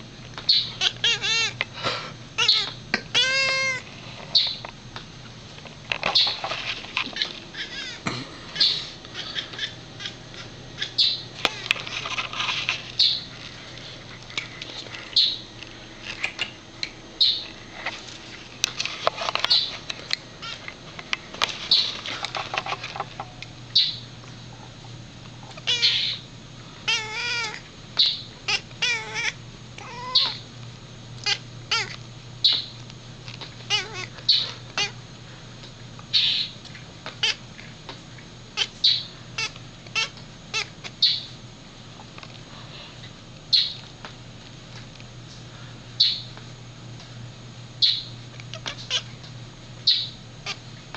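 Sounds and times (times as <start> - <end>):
cat chirping: 0.5 - 1.6, 2.4 - 3.8, 7.5 - 8.0, 25.5 - 26.2, 26.9 - 30.4, 31.2 - 32.7, 33.7 - 35.0.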